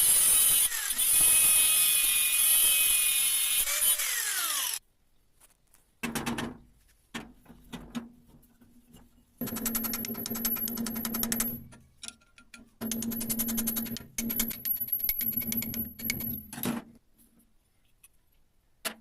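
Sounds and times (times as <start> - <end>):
power tool winding down: 3.6 - 4.8.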